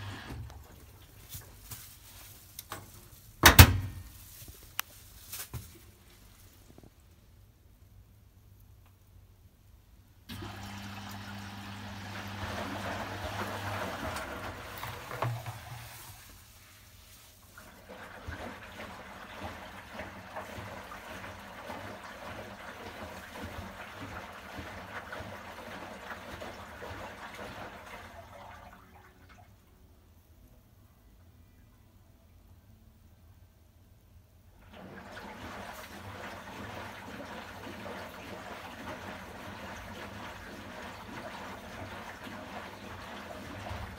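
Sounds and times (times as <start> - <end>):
water rushing into washing machine: 0.0 - 1.3, 10.3 - 16.6, 17.2 - 29.6, 34.6 - 43.9.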